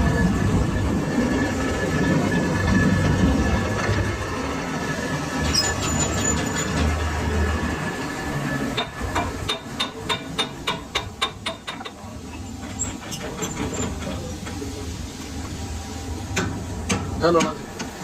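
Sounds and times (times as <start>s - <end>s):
workshop machine running: 0.0s - 18.0s
rapid hammer blows on metal: 8.8s - 12.0s, 16.4s - 18.0s.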